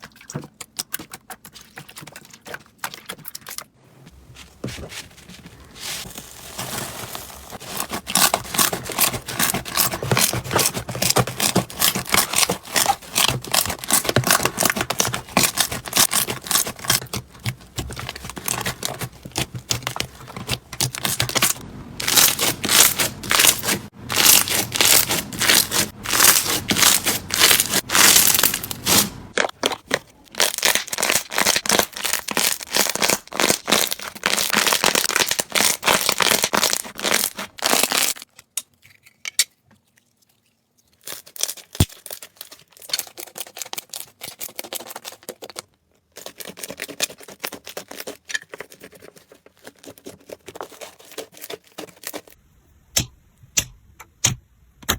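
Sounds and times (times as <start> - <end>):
slime crackling and popping: 6.1 - 38.2, 41.1 - 45.4.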